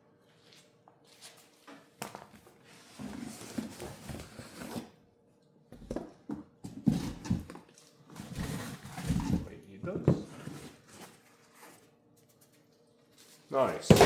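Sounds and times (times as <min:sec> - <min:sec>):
cardboard box scraping and rustling: 0:02.8 - 0:05.0, 0:06.7 - 0:07.5, 0:08.1 - 0:11.8, 0:13.7 - 0:14.0.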